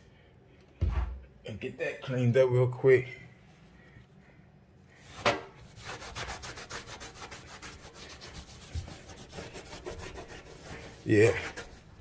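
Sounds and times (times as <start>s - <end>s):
towel rubbing a sink: 5.1s - 12.0s.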